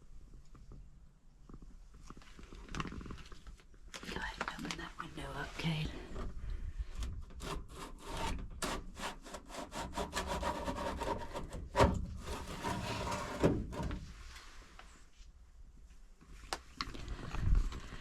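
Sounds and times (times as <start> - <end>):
window scraping in its frame: 7.4 - 14.5.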